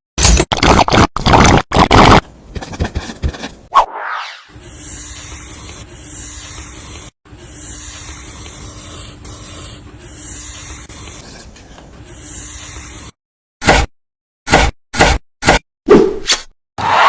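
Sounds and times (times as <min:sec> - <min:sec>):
spray paint hissing: 0:04.6 - 0:11.2.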